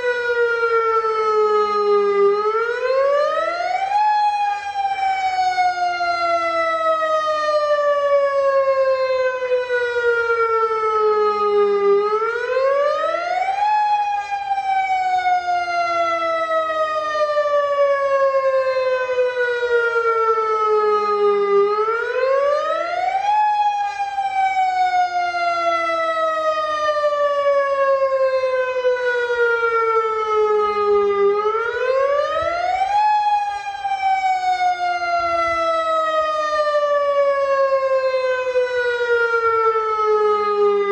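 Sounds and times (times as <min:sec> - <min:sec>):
warning siren wailing: 0:00.0 - 0:40.9.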